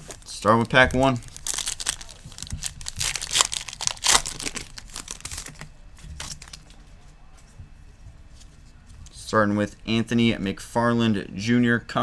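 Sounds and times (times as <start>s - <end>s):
card pack wrapper tearing and crinkling: 0.0s - 6.8s.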